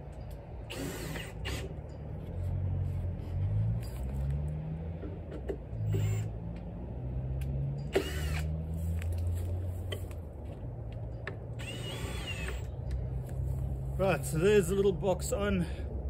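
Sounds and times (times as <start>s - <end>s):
cordless drill driving screws: 0.7s - 1.8s, 5.8s - 6.3s, 7.9s - 8.5s, 11.6s - 12.7s.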